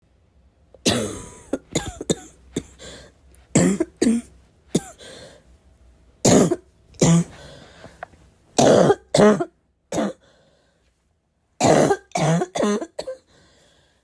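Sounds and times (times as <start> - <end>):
person barking cough: 0.8 - 2.8, 3.6 - 5.0, 6.3 - 7.3, 8.6 - 10.2, 11.6 - 13.2.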